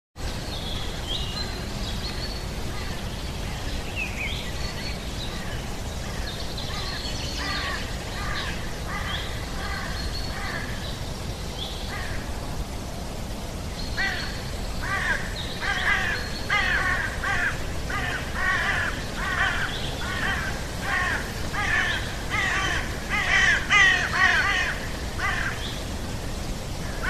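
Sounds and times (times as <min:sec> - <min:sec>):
low wind rumble: 0:00.2 - 0:27.0
crow cawing: 0:14.0 - 0:25.6.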